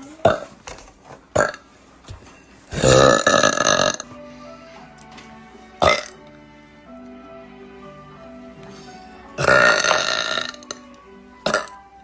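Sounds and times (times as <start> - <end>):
background music: 2.4 - 12.0
woman burping: 2.8 - 4.0, 5.8 - 6.1, 9.4 - 10.6, 11.4 - 11.8.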